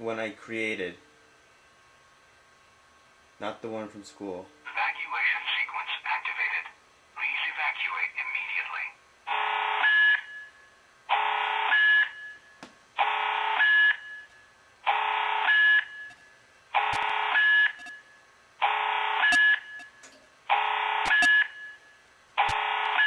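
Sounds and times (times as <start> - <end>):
pulsed alarm tone blasts: 9.3 - 10.5, 11.1 - 23.0.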